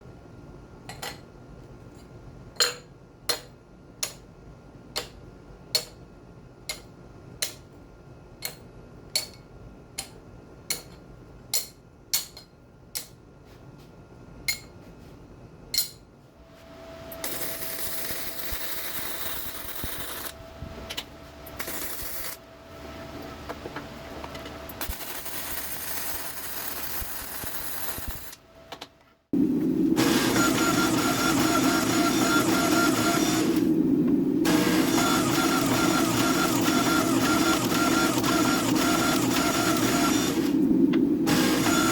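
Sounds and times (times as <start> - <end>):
steady hissing rush with tone: 33.5 - 34.7.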